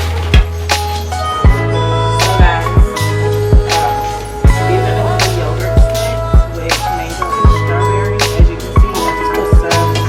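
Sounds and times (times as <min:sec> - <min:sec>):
bass kicks: 0:00.0 - 0:03.0
held bass line: 0:00.0 - 0:10.0.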